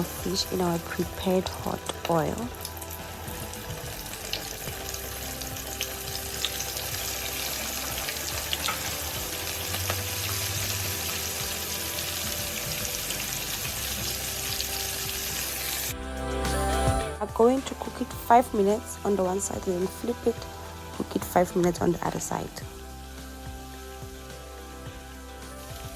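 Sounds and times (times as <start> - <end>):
fish deep-frying in oil: 0.0 - 15.9.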